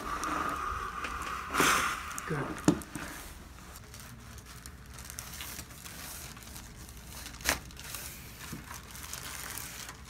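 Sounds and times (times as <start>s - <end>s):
rustling and crinkling: 2.0s - 10.0s.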